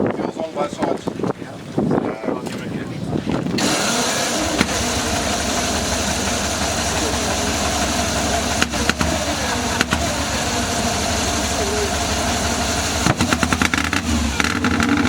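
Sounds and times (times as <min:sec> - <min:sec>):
sharp engine cracks: 0:03.5 - 0:15.0
motorcycle engine running: 0:03.6 - 0:15.0.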